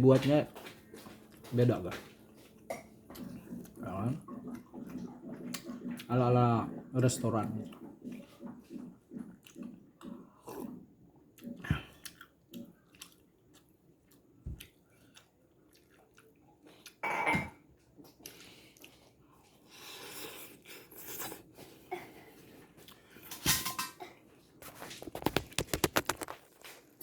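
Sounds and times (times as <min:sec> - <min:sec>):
person chewing noodles: 0:02.2 - 0:23.4.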